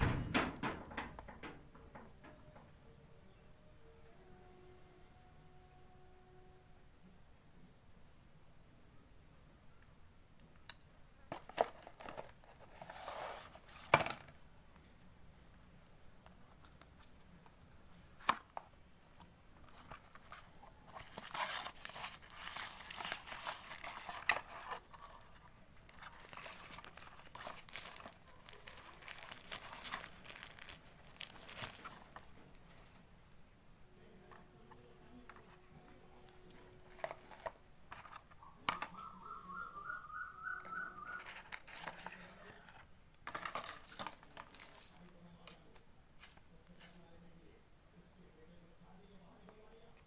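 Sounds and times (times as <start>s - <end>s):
sharp clicks or knocks: 0.0s - 2.7s
packaging crinkling and tearing: 20.2s - 25.3s, 25.9s - 32.2s, 41.2s - 42.6s.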